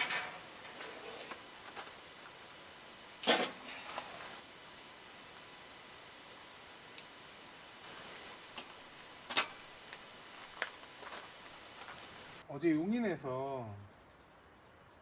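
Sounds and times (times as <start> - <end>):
faint steady hiss: 0.0 - 12.8
sharp clicks: 6.4 - 12.4.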